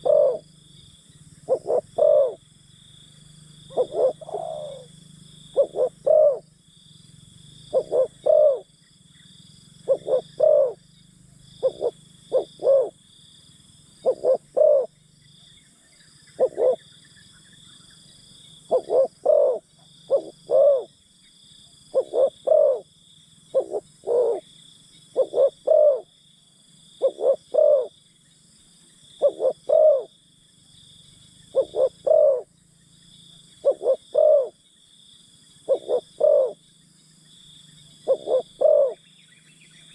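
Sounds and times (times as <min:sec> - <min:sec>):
doves cooing: 0:00.0 - 0:00.6, 0:01.4 - 0:02.4, 0:03.6 - 0:06.6, 0:07.7 - 0:08.8, 0:09.8 - 0:10.9, 0:11.5 - 0:13.0, 0:14.0 - 0:15.0, 0:16.3 - 0:16.9, 0:18.7 - 0:21.0, 0:21.9 - 0:22.9, 0:23.5 - 0:24.5, 0:25.1 - 0:26.1, 0:27.0 - 0:28.0, 0:29.2 - 0:30.1, 0:31.5 - 0:32.5, 0:33.6 - 0:34.6, 0:35.7 - 0:36.6, 0:37.9 - 0:39.1
faint high-pitched insect hum: 0:00.0 - 0:39.9.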